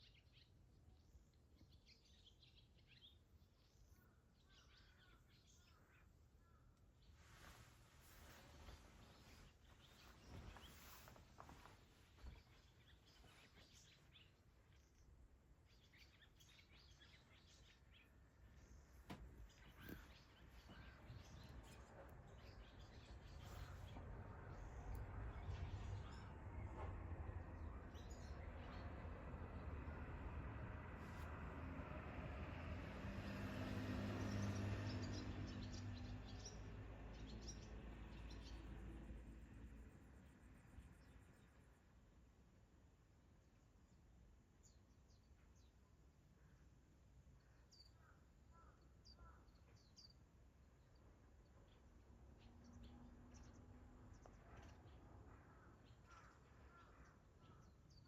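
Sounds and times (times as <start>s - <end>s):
swallows twittering: 15.7s - 26.4s, 52.8s - 58.0s.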